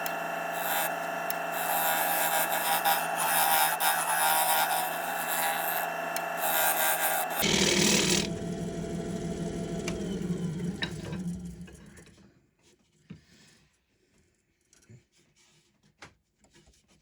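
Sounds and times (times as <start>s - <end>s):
scraper rasping on wood: 0.0s - 8.3s
lathe humming: 0.0s - 11.9s.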